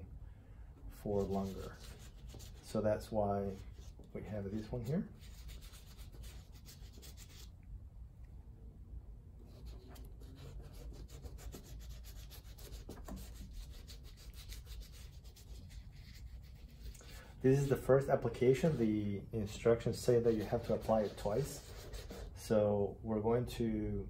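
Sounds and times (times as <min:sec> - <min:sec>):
gloved hands rubbing a boot: 0:20.1 - 0:22.4.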